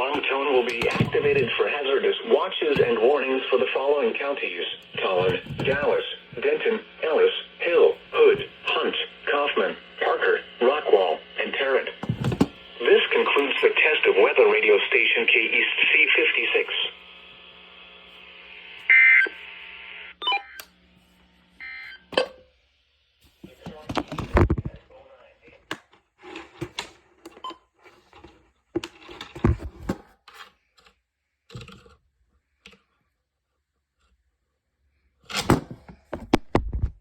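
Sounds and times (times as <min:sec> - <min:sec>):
radio static hiss: 0:00.0 - 0:20.2, 0:23.3 - 0:25.7
handling clicks and knocks: 0:00.2 - 0:01.5, 0:05.2 - 0:06.0, 0:12.0 - 0:12.6.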